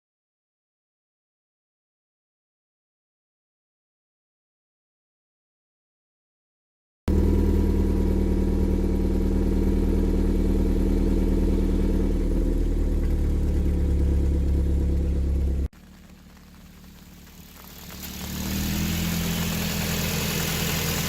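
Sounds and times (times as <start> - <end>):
car engine rattling: 7.1 - 21.0
faint engine sound: 7.1 - 21.0.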